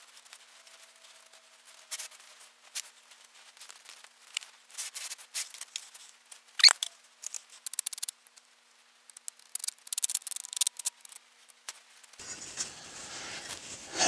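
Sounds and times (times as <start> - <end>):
rubbing and scratching: 4.7 - 8.1, 9.1 - 14.0
brief squeak: 6.6 - 6.9.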